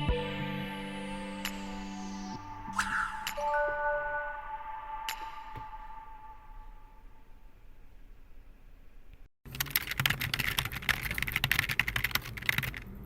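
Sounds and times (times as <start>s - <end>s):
rapid keyboard clicking: 9.5s - 13.0s.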